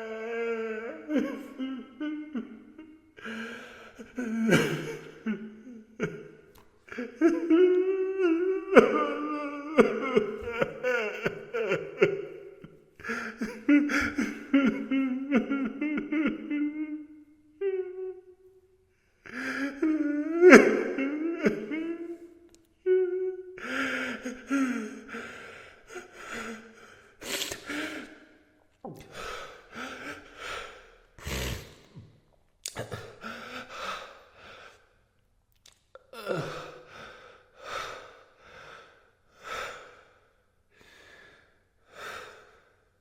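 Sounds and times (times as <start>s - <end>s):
man crying: 0.0s - 3.4s, 4.0s - 6.2s, 6.9s - 18.4s, 19.3s - 27.0s.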